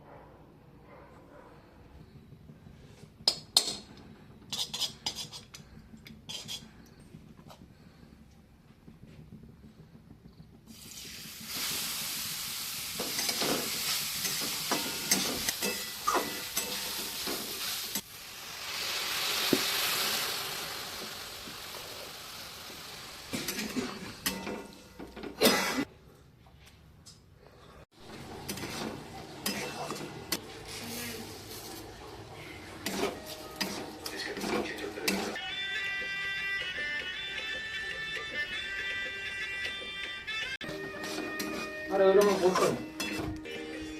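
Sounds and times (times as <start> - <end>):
spatula scraping a pan: 4.5 - 5.7, 6.3 - 6.7, 28.2 - 31.9, 32.5 - 35.4, 40.6 - 43.2
carrots sizzling in a pan: 10.7 - 24.4.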